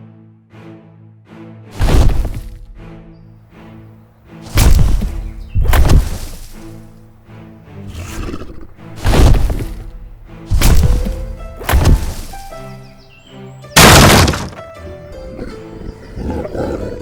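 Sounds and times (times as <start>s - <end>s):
loud crashing impacts: 1.8s - 2.7s, 4.5s - 6.7s, 9.0s - 12.6s, 13.8s - 14.6s
music playing: 6.2s - 17.0s.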